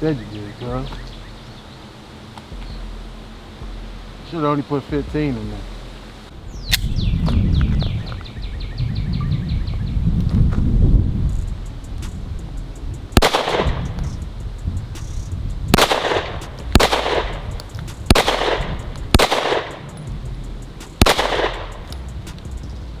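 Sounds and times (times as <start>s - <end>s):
pistol shots with echo: 13.2s - 13.8s, 15.7s - 17.5s, 18.1s - 19.9s, 21.0s - 21.9s.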